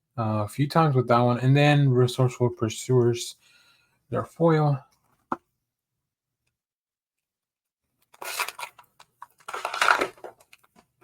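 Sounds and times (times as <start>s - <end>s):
foil wrapper crinkling and tearing: 8.0s - 10.8s.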